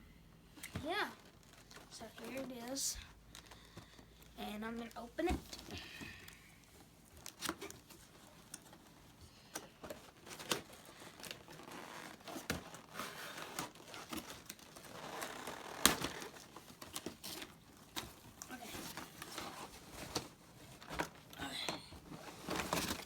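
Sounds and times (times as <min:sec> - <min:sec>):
packaging crinkling and tearing: 0:07.1 - 0:08.8, 0:09.8 - 0:21.2.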